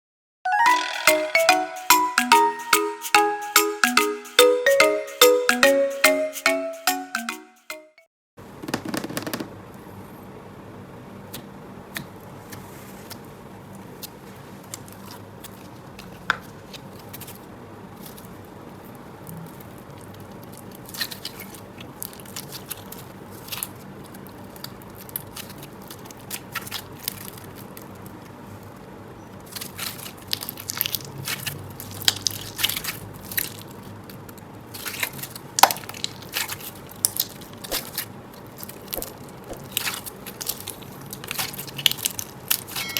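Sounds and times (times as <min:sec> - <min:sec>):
slime squishing crackles and pops: 0:29.5 - 0:42.9.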